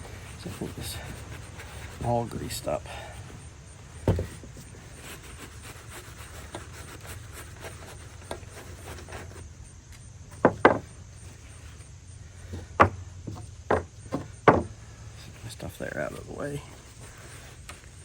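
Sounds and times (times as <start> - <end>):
sharp knocks on metal parts: 10.3 - 10.9, 12.5 - 14.7.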